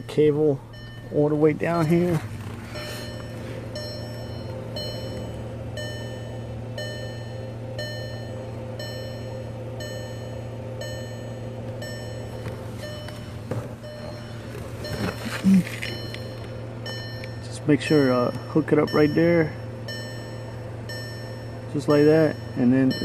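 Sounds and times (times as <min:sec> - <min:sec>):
car dashboard warning chime: 0:00.0 - 0:23.0
steady low hum: 0:00.0 - 0:23.0.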